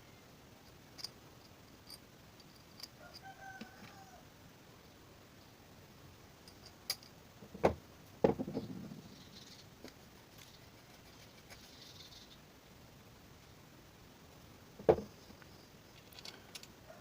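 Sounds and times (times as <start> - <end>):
small parts and tools clicking: 0.6 - 4.0, 6.5 - 7.2, 15.4 - 16.8.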